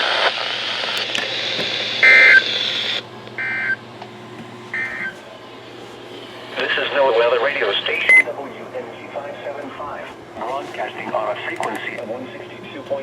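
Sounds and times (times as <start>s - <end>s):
radio hiss: 0.0s - 5.2s, 5.8s - 13.0s
low hum: 0.4s - 13.0s
data tone bursts: 2.0s - 3.8s, 7.9s - 8.3s.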